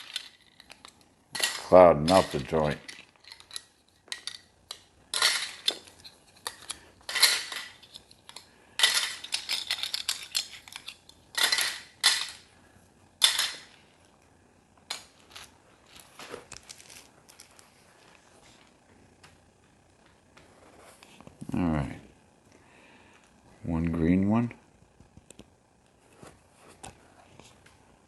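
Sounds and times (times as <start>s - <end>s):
plastic pieces clattering: 0.0s - 12.4s, 13.2s - 13.8s, 14.9s - 17.6s.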